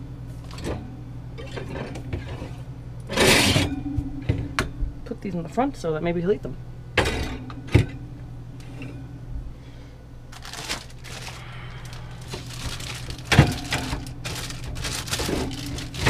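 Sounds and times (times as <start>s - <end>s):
steady low hum: 0.0s - 16.0s
packaging rustling: 10.3s - 16.0s.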